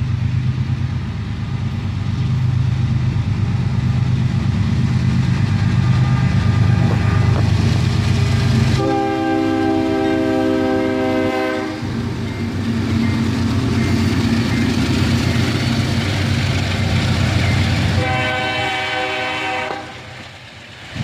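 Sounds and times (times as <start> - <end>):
train rolling over track: 0.0 - 21.0
locomotive air horn: 5.8 - 7.5, 8.8 - 11.9, 17.9 - 20.2.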